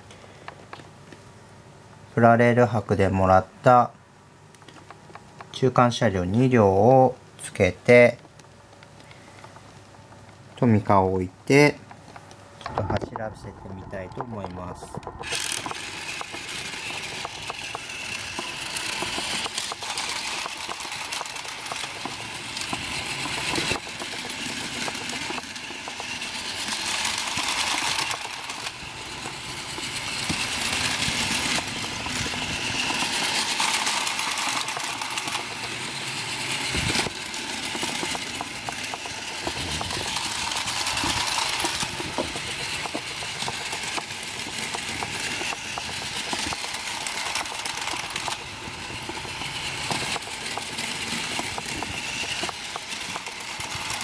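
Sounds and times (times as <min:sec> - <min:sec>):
toy train rattling clicks: 0:14.1 - 0:54.0
toy train motor whirring: 0:14.3 - 0:54.0.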